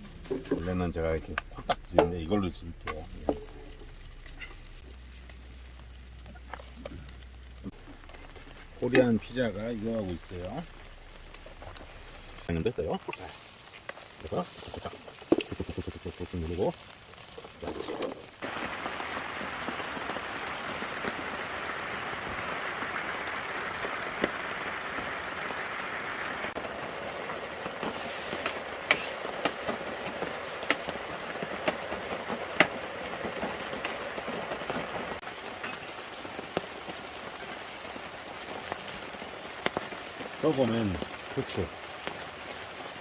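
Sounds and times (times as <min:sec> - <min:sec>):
pancake sizzling in oil: 0:13.1 - 0:43.0.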